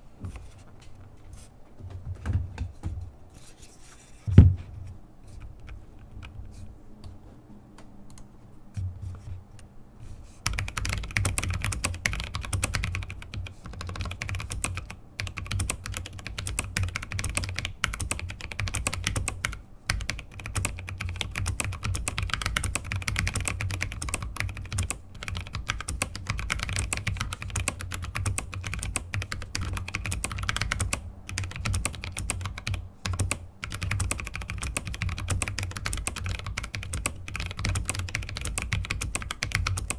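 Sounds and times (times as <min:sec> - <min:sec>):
mechanical keyboard typing: 0:10.4 - 0:39.9.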